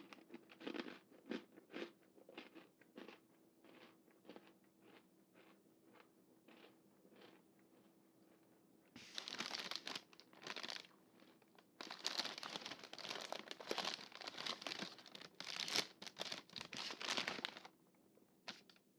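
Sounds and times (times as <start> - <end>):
snack packaging crinkling: 9.0 - 17.8, 18.5 - 18.8.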